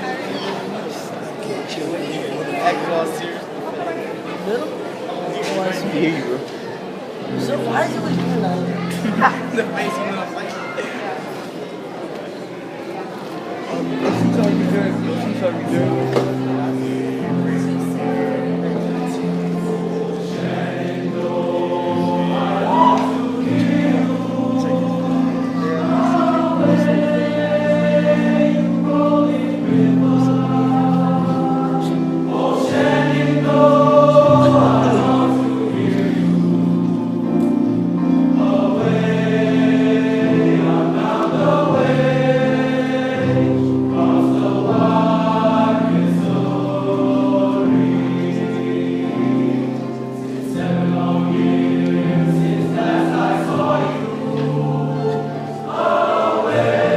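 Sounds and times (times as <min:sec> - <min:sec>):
choir singing in harmony: 0:07.2 - 0:11.7, 0:13.7 - 0:56.9.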